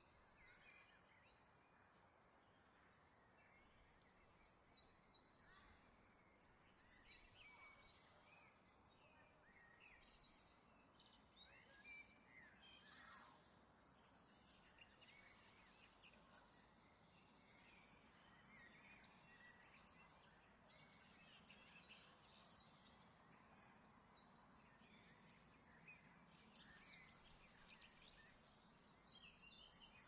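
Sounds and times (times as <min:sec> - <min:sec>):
faint bird chirps: 0:02.8 - 0:30.0.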